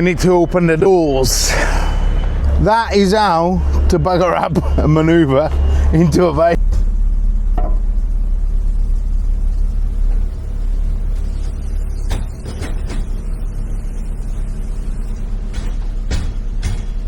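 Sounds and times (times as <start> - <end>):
diesel engine running: 0.0 - 17.0.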